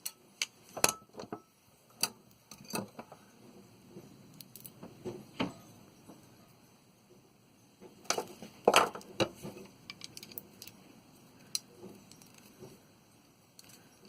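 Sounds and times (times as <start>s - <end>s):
small metal parts clinking: 4.4s - 4.8s, 9.8s - 10.8s, 11.4s - 12.6s, 13.6s - 14.0s.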